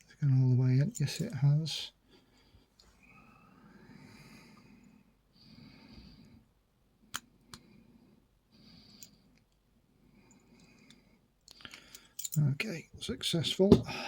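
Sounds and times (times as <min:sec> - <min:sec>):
faint slow breathing: 0:02.0 - 0:12.4.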